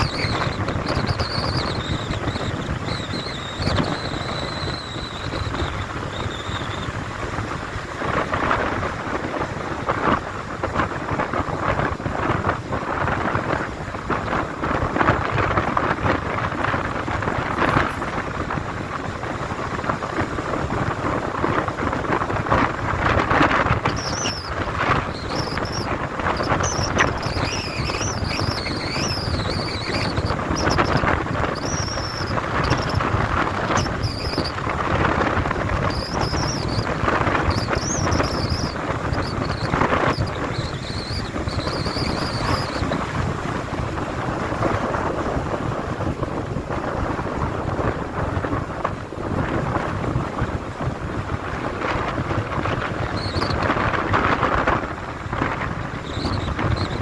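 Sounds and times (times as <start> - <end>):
high wavering squeaks: 0.0 - 6.9, 16.6 - 18.5, 23.8 - 33.0, 35.9 - 43.0
storm wind roaring: 0.0 - 57.0
wind buffeting microphone: 0.0 - 57.0.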